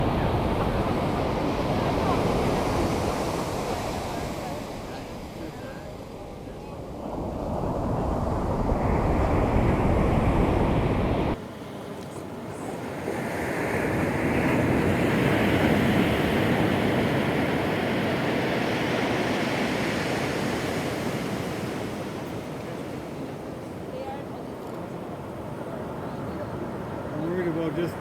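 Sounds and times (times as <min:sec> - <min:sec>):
wind buffeting microphone: 0:00.0 - 0:11.5
ocean surf washing up beach: 0:00.0 - 0:28.0.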